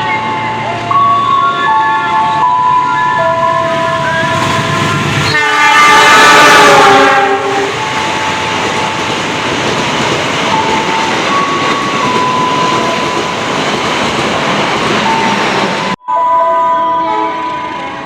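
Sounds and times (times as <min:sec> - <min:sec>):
train wheels rumbling on rails: 0:03.3 - 0:16.0.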